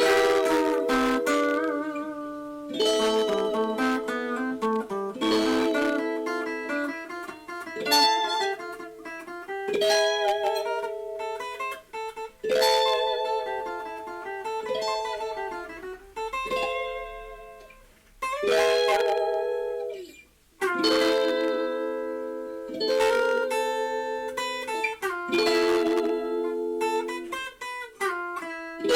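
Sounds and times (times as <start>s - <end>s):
solo guitar playing blues: 0.0s - 28.9s.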